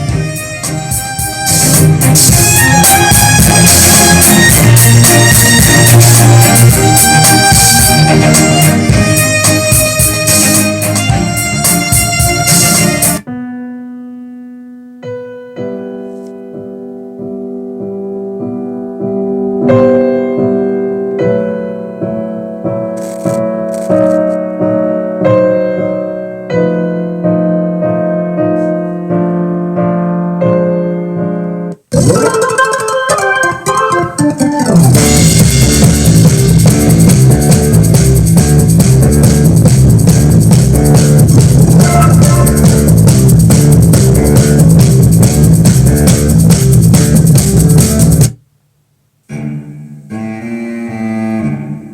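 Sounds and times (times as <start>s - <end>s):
piano music through speakers: 0.0s - 48.4s.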